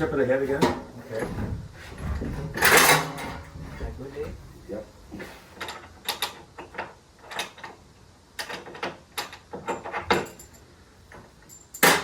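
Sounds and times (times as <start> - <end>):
heavy load clicking and knocking: 0.0 - 4.6.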